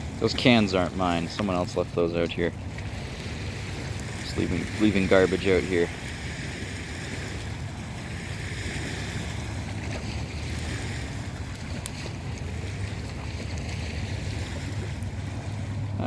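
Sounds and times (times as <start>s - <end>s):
open fire burning: 0.0s - 5.4s, 6.0s - 15.6s
faint fire snap: 3.5s - 4.4s, 9.9s - 13.7s.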